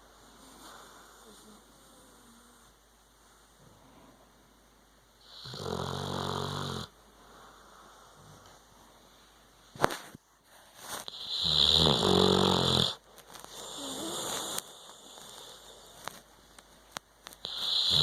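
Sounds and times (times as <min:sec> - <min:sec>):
soft breath: 0:00.0 - 0:04.4, 0:07.1 - 0:09.5, 0:13.4 - 0:16.2
dog snoring: 0:05.2 - 0:06.9, 0:11.1 - 0:15.8, 0:17.4 - 0:18.0.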